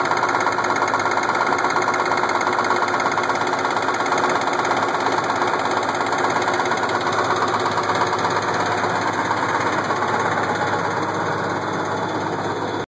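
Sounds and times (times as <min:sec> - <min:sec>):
diesel engine running: 0:00.0 - 0:12.9
fast regular engine knock: 0:00.0 - 0:12.9.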